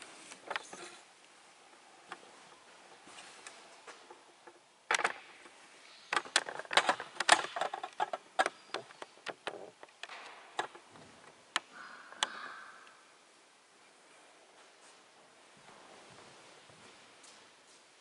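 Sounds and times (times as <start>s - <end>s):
sharp clicks and knocks: 3.4s - 12.6s.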